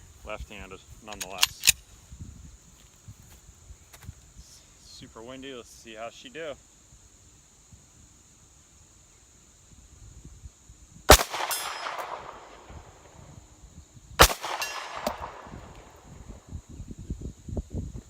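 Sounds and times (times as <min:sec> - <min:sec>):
wind rumbling on microphone: 0:00.0 - 0:04.5, 0:09.6 - 0:18.0
pistol shots: 0:11.1 - 0:13.1, 0:14.2 - 0:16.0
bullet ringing on steel plate: 0:11.4 - 0:12.2, 0:14.4 - 0:15.3.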